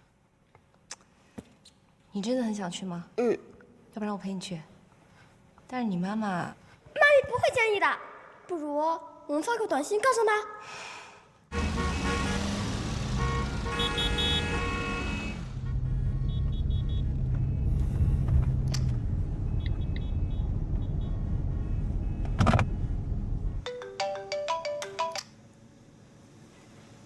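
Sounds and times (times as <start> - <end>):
loud street traffic: 11.5 - 23.6
phone ringtone: 23.6 - 25.3.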